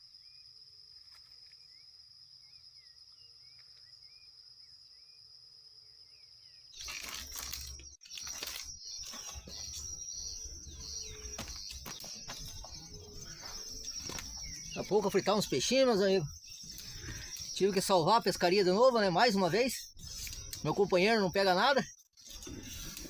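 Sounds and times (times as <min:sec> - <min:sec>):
high insect drone: 0:00.0 - 0:23.0
bird chirping: 0:01.4 - 0:23.0.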